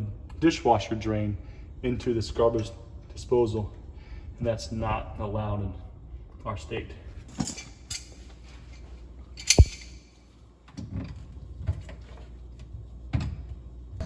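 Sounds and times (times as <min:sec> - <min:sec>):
loud sharp clack: 0:09.5 - 0:10.0.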